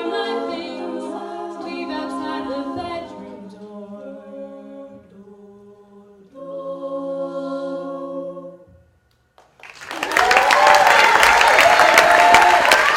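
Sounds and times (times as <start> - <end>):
vocal group singing a chord: 0.0 - 8.8
audience applauding: 9.4 - 12.9
audience cheering: 9.6 - 12.9.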